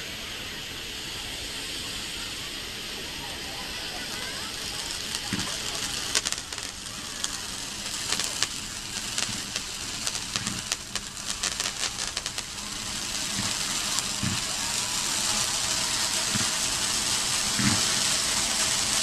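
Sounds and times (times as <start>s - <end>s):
fireworks crackling: 0.0s - 19.0s
fireworks hissing: 0.0s - 19.0s.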